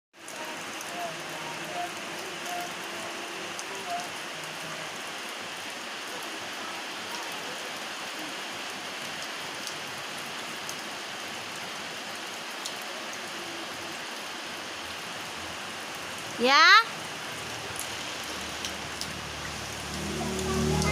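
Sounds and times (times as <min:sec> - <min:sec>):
raindrop ticks: 0:00.2 - 0:04.6, 0:17.7 - 0:20.9
rain hissing: 0:00.2 - 0:20.9.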